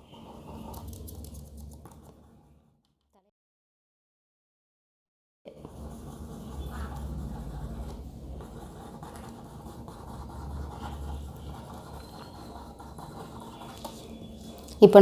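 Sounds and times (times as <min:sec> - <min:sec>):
pen scratching on paper: 0:00.0 - 0:02.5, 0:05.6 - 0:14.7
low steady hum: 0:05.5 - 0:15.0.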